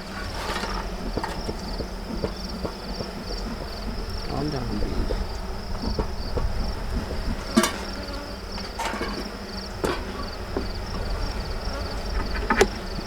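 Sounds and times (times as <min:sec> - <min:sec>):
bees buzzing: 0:00.0 - 0:13.0
wind rumbling on microphone: 0:00.0 - 0:13.0
wooden frames clicking and knocking: 0:00.0 - 0:13.0
high-pitched insect trill: 0:00.6 - 0:13.0.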